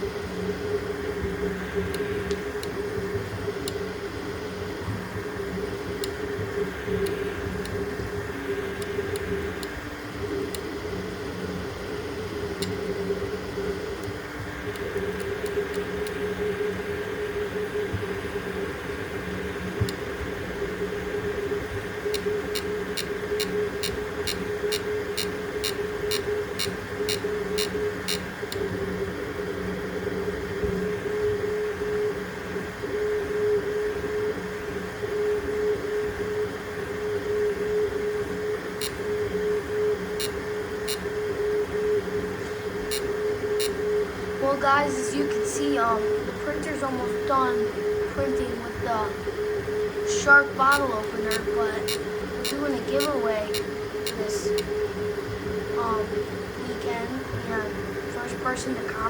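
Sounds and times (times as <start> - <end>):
printer stepper motors whining: 0.0 - 59.0
faint ticks: 5.8 - 6.2, 22.1 - 28.6, 40.2 - 41.0, 42.9 - 43.8, 50.7 - 54.7.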